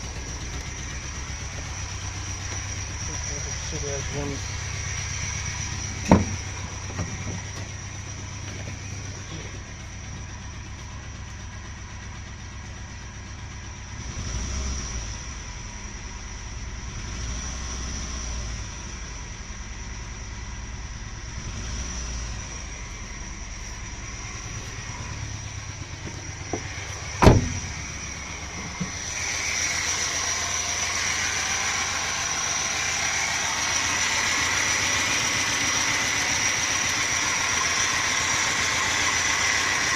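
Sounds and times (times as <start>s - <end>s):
engine running with high whine: 0.0s - 39.9s
sharp knock: 6.1s - 7.4s, 26.5s - 27.9s.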